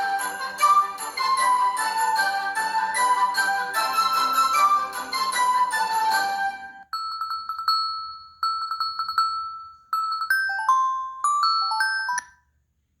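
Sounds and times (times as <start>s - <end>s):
electronic chime ringtone: 6.9s - 12.5s.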